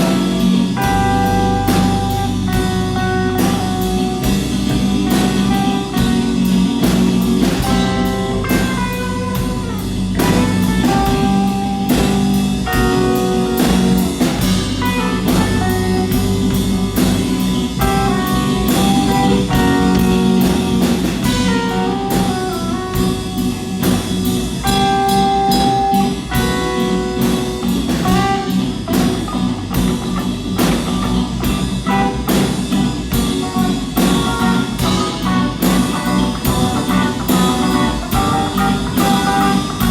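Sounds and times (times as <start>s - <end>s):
drum hits: 0.0s - 39.9s
electric guitar notes: 0.0s - 39.9s.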